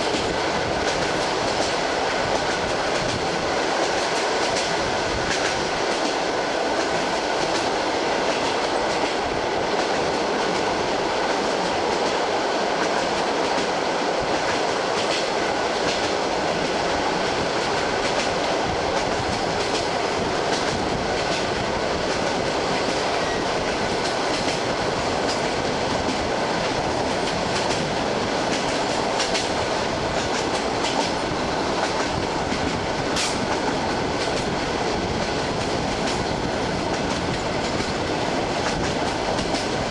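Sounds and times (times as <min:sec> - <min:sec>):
clickety-clack of rail joints: 0:00.0 - 0:39.9
train wheels on rails: 0:00.0 - 0:39.9.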